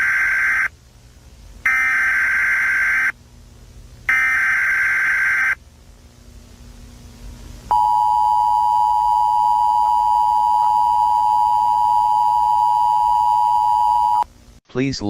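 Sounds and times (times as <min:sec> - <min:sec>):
screechy digital data burst: 0:01.7 - 0:03.2, 0:04.1 - 0:05.6.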